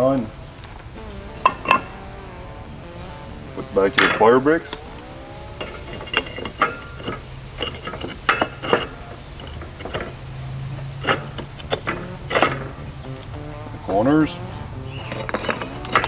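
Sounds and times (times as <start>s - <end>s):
low steady hum: 0.4s - 7.8s, 8.9s - 16.0s.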